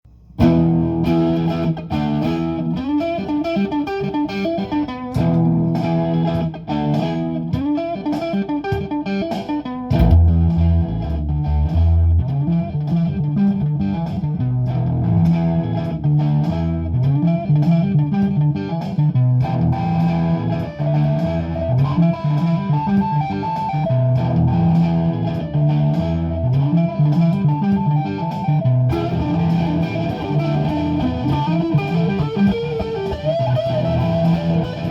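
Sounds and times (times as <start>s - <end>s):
looped electric guitar phrases: 0.3s - 34.9s
low bass line: 9.9s - 34.9s.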